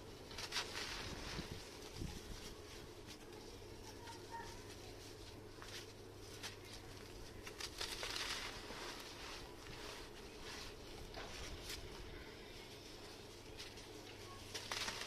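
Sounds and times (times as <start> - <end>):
sand chunks crumbling: 6.4 - 11.9, 14.4 - 15.0.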